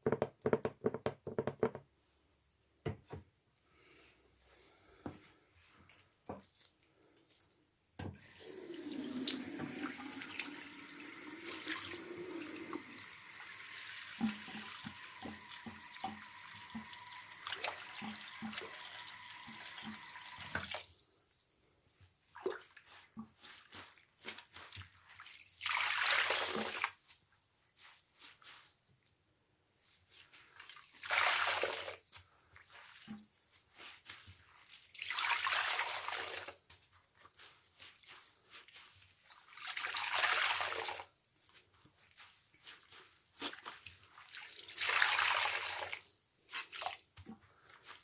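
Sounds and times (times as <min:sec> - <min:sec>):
tap running into a sink: 0:08.0 - 0:20.8
water dripping: 0:08.2 - 0:20.9.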